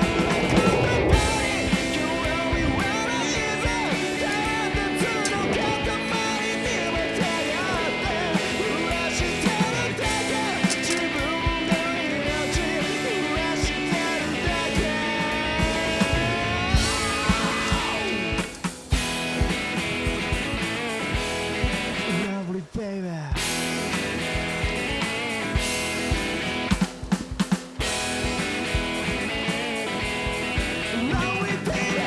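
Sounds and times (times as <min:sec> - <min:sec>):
rock music with singing: 0:00.0 - 0:32.0.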